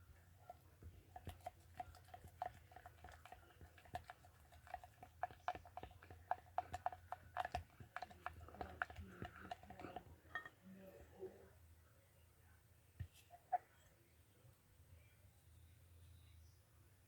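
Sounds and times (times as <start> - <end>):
utensil clicking against bowl: 1.1 - 10.5.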